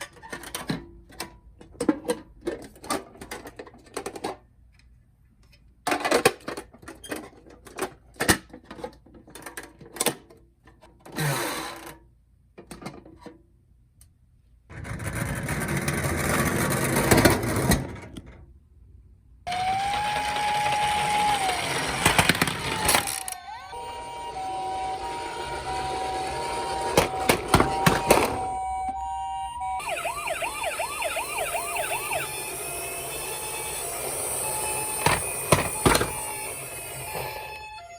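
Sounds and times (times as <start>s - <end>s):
toy cars clacking: 0.0s - 4.5s, 19.5s - 28.5s, 30.0s - 37.9s
electronic toy siren sounds: 19.5s - 37.9s
rushing whir: 29.8s - 37.6s.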